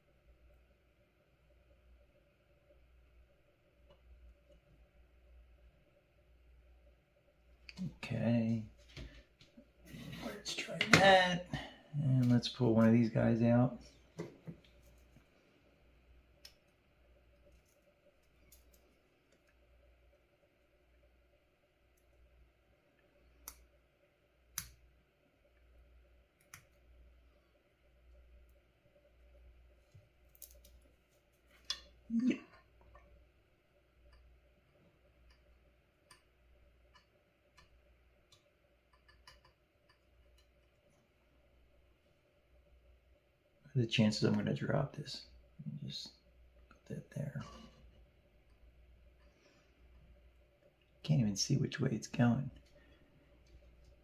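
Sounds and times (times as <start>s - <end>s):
faint room hum: 0.0s - 54.0s
small sharp clicks: 36.9s - 40.7s.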